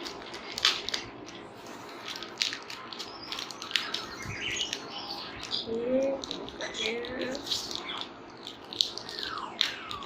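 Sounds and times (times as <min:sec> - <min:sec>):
packaging rustling and crackling: 0:00.0 - 0:05.6.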